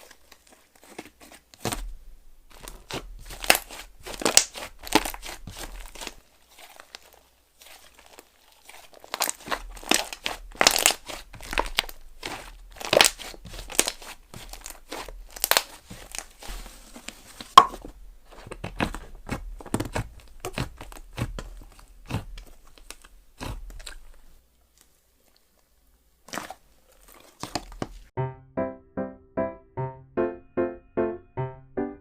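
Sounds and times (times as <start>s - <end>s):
slime crackling and popping: 2.5s - 16.5s, 18.4s - 25.4s, 26.2s - 28.1s.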